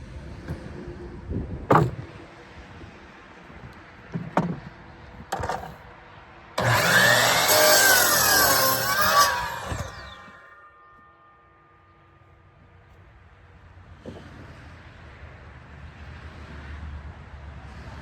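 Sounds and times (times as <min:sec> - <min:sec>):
wood knocking: 0:01.7 - 0:02.2, 0:04.1 - 0:05.8
electric saw cutting wood: 0:05.4 - 0:05.8, 0:06.6 - 0:11.0.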